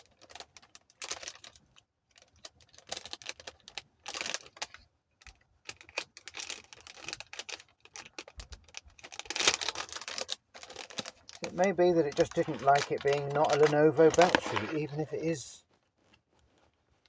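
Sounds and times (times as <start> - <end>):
hands handling objects clicking: 10.6 - 15.4.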